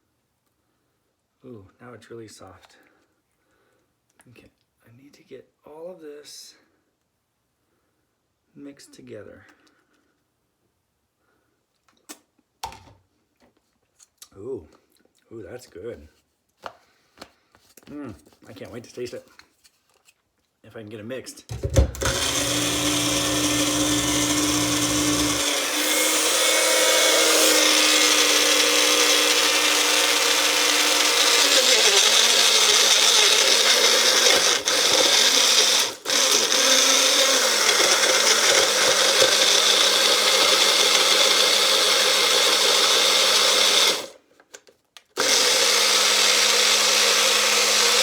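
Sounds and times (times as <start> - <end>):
blender running: 21.5 - 44.2, 45.2 - 48.0.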